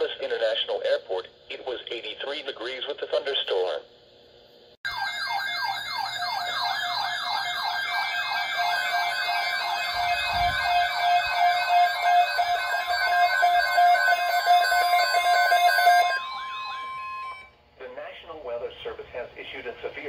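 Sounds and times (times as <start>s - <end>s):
downward-sweeping siren wail: 4.9s - 17.5s
wavering high warble: 4.9s - 17.5s
steady pulsing beep: 5.1s - 17.5s.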